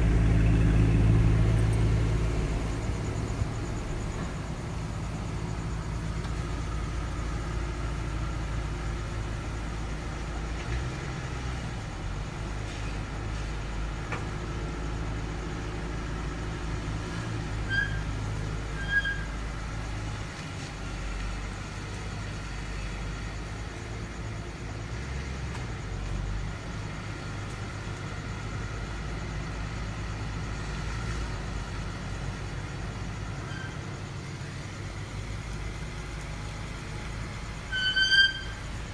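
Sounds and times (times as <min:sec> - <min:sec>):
car engine idling: 0:00.0 - 0:18.6.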